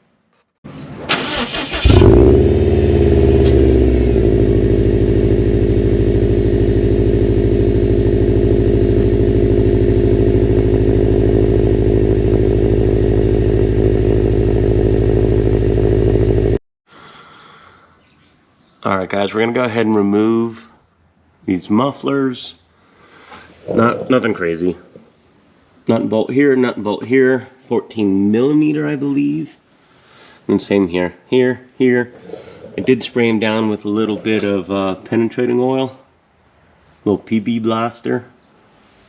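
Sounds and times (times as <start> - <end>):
car engine starting and idling: 0.9 - 16.6.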